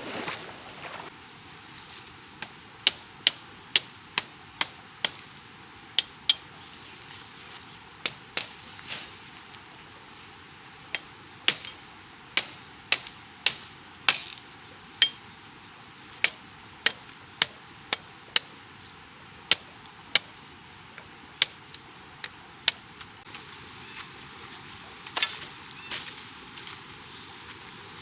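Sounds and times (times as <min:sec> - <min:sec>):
sharp chopping strikes: 0:12.4 - 0:14.4.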